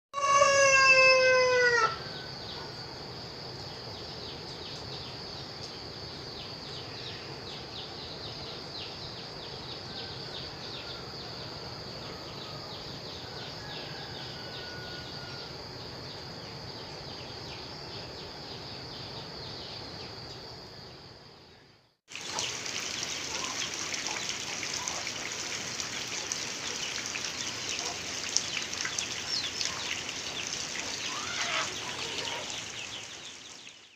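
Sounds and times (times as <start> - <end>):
rooster crowing: 0.2 - 2.3, 9.9 - 15.7, 30.9 - 32.8
constant high-pitched tone: 1.8 - 21.9
steady rain: 22.1 - 33.9.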